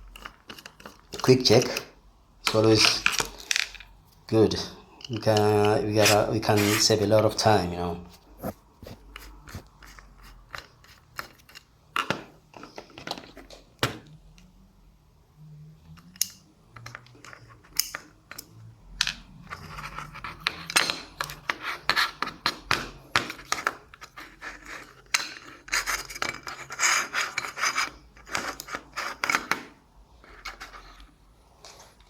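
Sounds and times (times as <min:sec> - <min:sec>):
small metal tools clicking and scraping: 0:00.0 - 0:01.9, 0:08.4 - 0:13.4, 0:16.0 - 0:18.7, 0:19.5 - 0:29.6.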